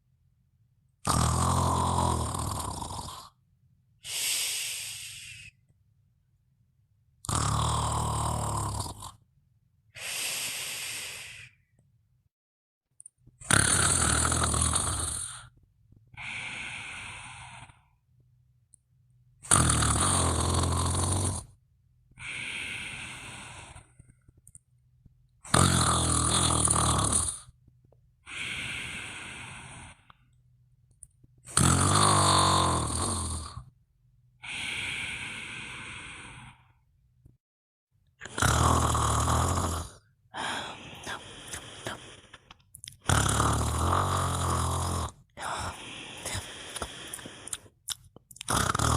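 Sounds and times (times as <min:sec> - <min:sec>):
loud snoring: 0:01.0 - 0:03.4, 0:07.2 - 0:09.3, 0:13.4 - 0:18.0, 0:19.4 - 0:24.3, 0:25.3 - 0:27.6, 0:28.2 - 0:30.3, 0:31.3 - 0:33.8, 0:34.4 - 0:36.8, 0:38.2 - 0:48.9
soft breathy exhale: 0:04.0 - 0:05.6.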